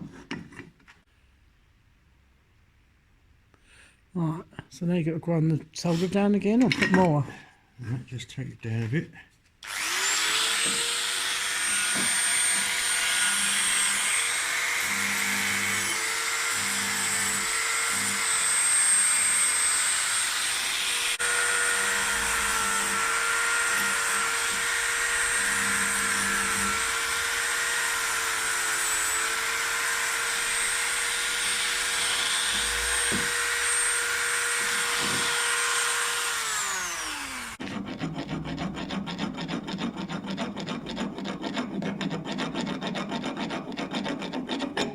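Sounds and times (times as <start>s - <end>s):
electric grinder grinding metal: 9.6s - 44.9s
file rasping: 9.6s - 44.9s.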